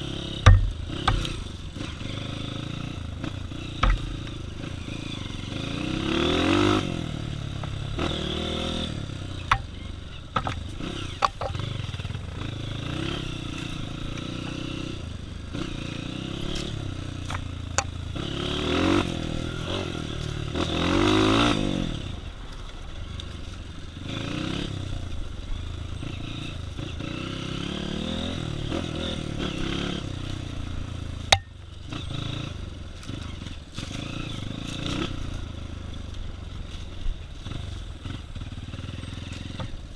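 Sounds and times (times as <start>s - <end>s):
dirt bike engine revving: 0.0s - 22.9s, 23.8s - 39.9s
sharp clicks and rattles: 10.4s - 11.7s.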